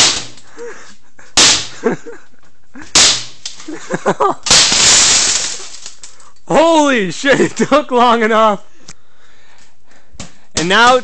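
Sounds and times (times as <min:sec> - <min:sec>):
glass shattering: 0:00.0 - 0:00.4, 0:01.4 - 0:01.9, 0:02.9 - 0:06.3
microwave crashing: 0:00.0 - 0:00.4, 0:04.4 - 0:06.0.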